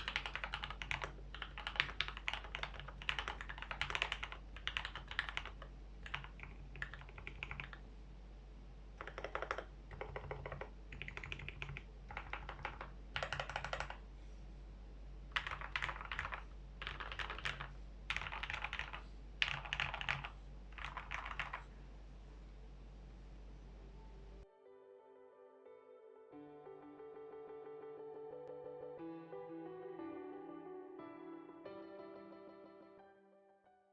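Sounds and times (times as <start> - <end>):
mechanical keyboard typing: 0.0 - 7.8, 9.0 - 14.0, 15.3 - 21.6.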